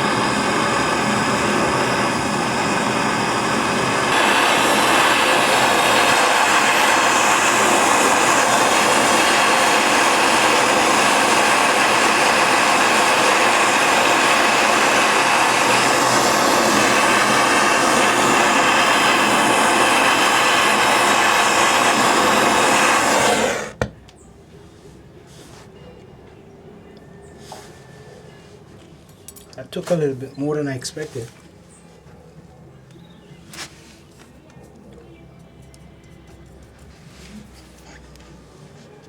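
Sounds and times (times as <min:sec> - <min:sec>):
gas torch flame hissing: 0:00.0 - 0:23.9.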